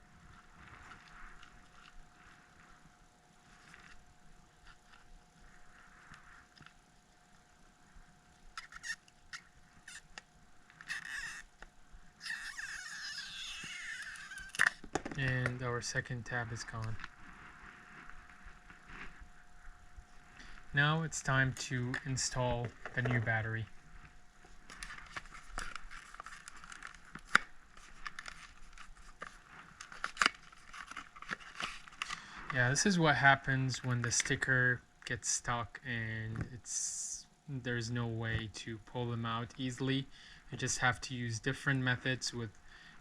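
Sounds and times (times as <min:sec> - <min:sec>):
adhesive tab stretching squeakily: 0:08.6 - 0:10.2, 0:10.8 - 0:11.5, 0:12.2 - 0:14.8.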